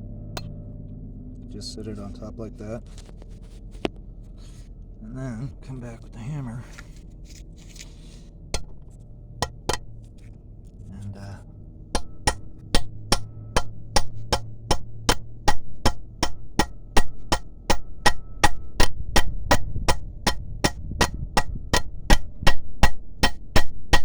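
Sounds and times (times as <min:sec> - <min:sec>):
hammer striking metal: 0:08.6 - 0:10.0, 0:11.9 - 0:24.0.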